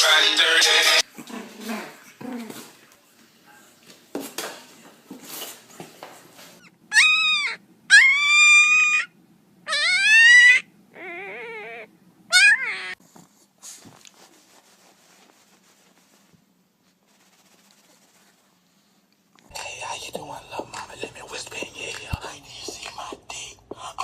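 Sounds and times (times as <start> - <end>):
dog whining: 6.6 - 13.0
faint rustling: 13.0 - 19.6.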